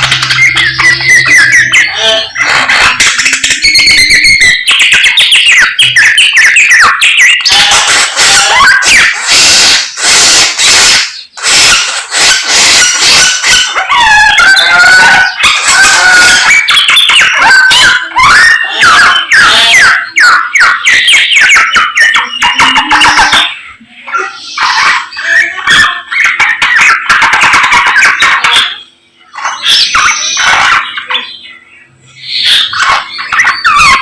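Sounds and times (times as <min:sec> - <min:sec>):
songbird singing: 0:00.0 - 0:07.4.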